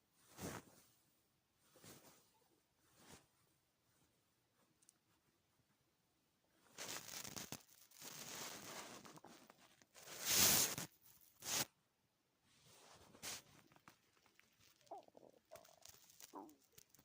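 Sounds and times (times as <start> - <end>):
stomach gurgling: 13.8 - 17.0.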